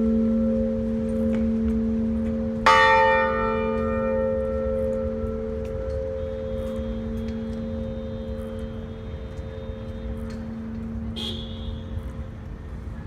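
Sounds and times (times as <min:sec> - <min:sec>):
church bell hum: 0:00.0 - 0:08.9
city traffic rumble: 0:00.0 - 0:13.0.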